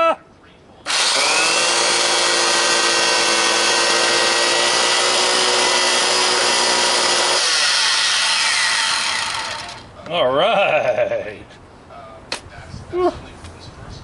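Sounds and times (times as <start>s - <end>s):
table saw running: 0.9s - 9.9s.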